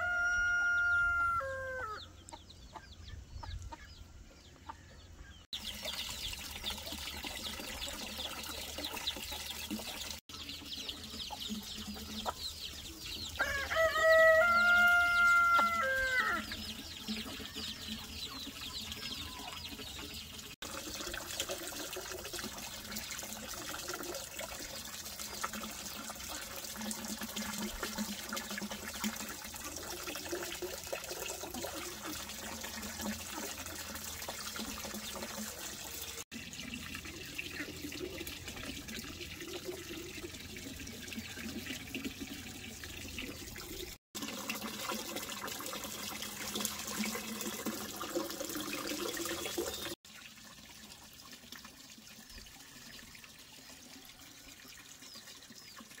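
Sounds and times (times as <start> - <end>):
water running and splashing: 5.5 - 56.0.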